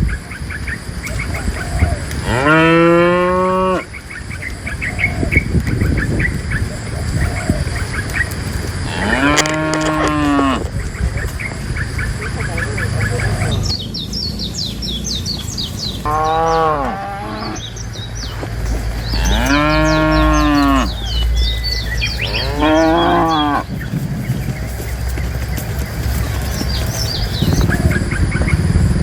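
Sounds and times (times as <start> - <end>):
cows mooing: 2.1 - 4.0, 7.7 - 10.8, 15.9 - 28.2.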